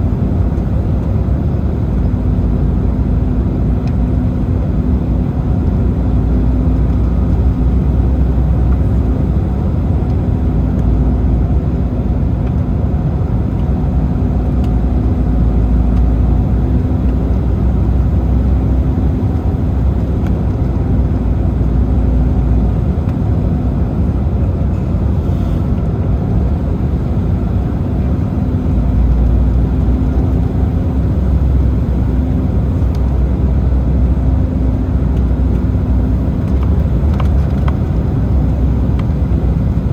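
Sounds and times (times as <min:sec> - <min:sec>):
airliner cabin rumble: 0:00.0 - 0:39.9
steady engine hum: 0:00.0 - 0:39.9.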